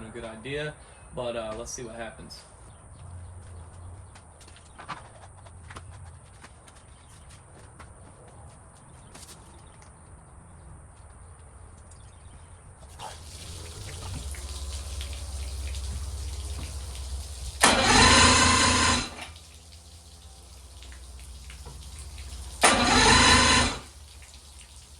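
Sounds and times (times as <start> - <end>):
outboard boat motor cranking: 12.9 - 24.9.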